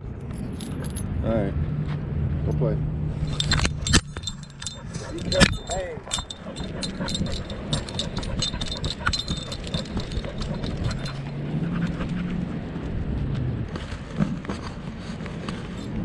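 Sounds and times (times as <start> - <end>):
metal dog tags jingling: 0.4 - 1.1, 3.2 - 12.2.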